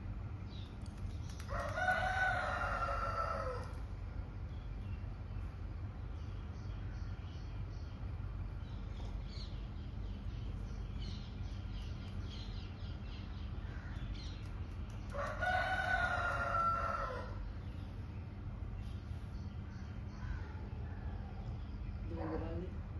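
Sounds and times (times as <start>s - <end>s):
small birds chirping: 0.0s - 22.9s
steady low rumble: 0.0s - 22.9s
rooster crowing: 1.5s - 3.8s, 15.1s - 17.4s.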